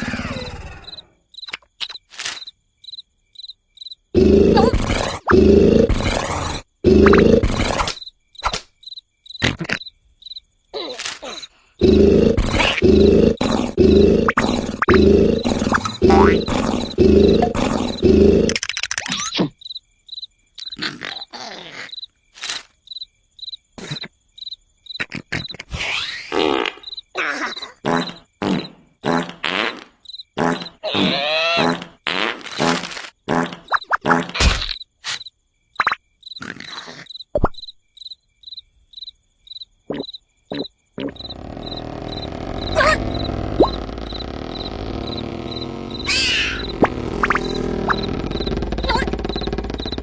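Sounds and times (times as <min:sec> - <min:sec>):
cricket chirping: 0:00.0 - 0:29.4, 0:30.0 - 0:32.0, 0:32.6 - 0:50.0
cartoon snore: 0:04.2 - 0:08.0, 0:11.8 - 0:18.6, 0:30.4 - 0:32.0, 0:41.0 - 0:50.0
comic sound effects: 0:41.0 - 0:44.2, 0:44.8 - 0:49.5
dense noise: 0:41.2 - 0:50.0.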